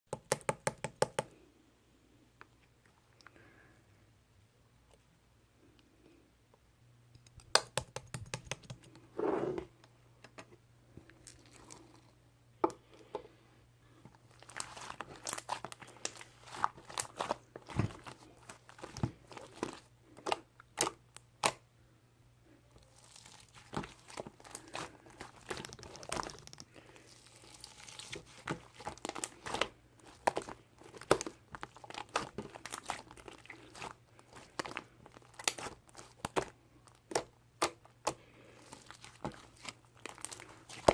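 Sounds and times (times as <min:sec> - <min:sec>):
sharp clicks and taps: 0:07.1 - 0:09.0
close-up crinkling and rustling: 0:14.0 - 0:20.5, 0:22.7 - 0:40.9.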